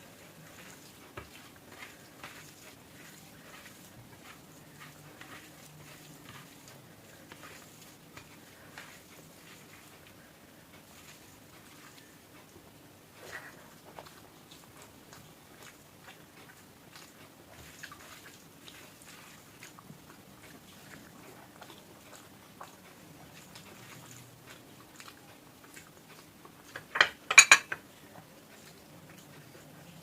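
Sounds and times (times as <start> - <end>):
faint chewing: 0.0 - 27.0, 27.7 - 30.0.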